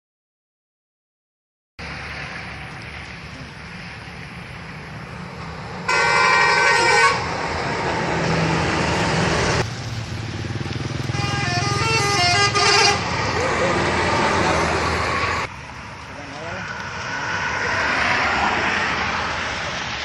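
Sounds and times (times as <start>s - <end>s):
passing traffic: 1.8s - 20.0s
multi-tone bus horn: 5.9s - 7.3s, 11.1s - 13.4s.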